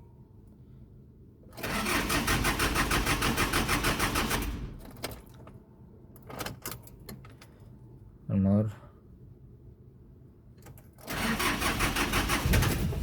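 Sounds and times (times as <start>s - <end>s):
diesel engine cranking: 1.5s - 5.0s, 11.0s - 13.0s.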